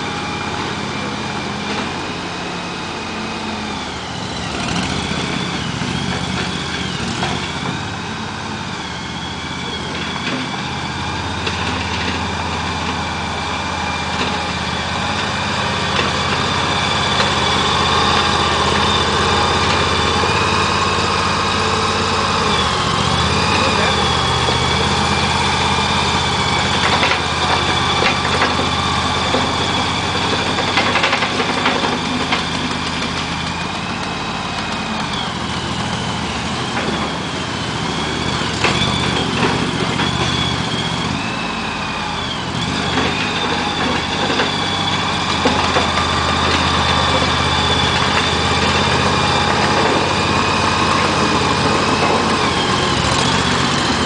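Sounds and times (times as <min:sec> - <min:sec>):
petrol engine running: 0:00.0 - 0:54.0.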